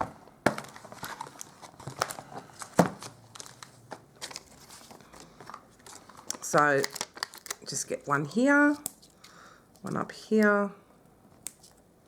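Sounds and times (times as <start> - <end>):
paper rustling and crinkling: 0.5 - 7.7.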